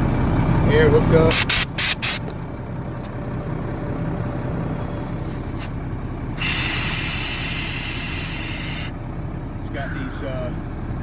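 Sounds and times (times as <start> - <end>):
truck engine idling: 0.0 - 11.0
compressed air hissing: 1.3 - 2.3, 5.2 - 9.0.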